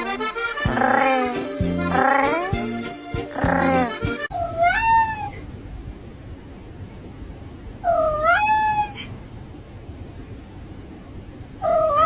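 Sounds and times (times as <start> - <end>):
cat meowing: 3.3 - 5.4, 7.8 - 9.1, 11.6 - 12.0.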